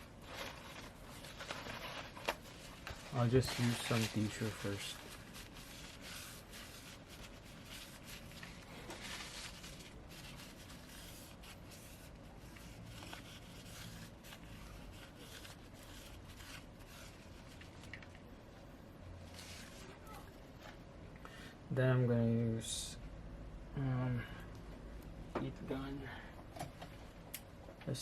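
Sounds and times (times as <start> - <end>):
tissue rubbing scratchy rustle: 0.0 - 17.9, 19.2 - 20.3.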